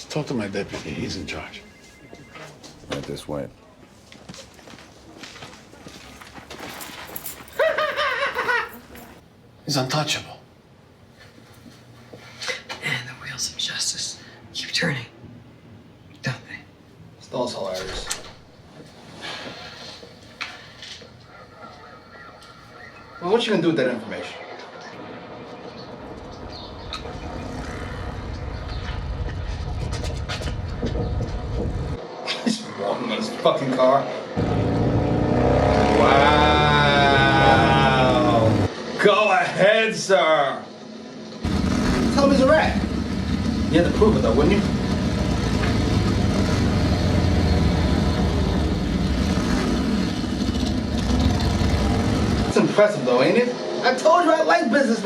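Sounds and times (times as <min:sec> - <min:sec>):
vehicle engines rumbling: 0:24.7 - 0:32.0, 0:34.3 - 0:39.0, 0:41.0 - 0:54.1
low vehicle engine rumble: 0:25.0 - 0:32.0.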